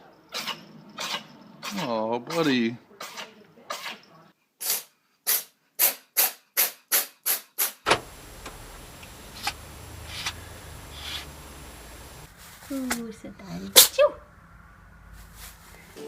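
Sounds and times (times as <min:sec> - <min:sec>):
cat sneezing: 0:03.0 - 0:04.0, 0:04.6 - 0:05.9
faint hiss: 0:07.6 - 0:13.0.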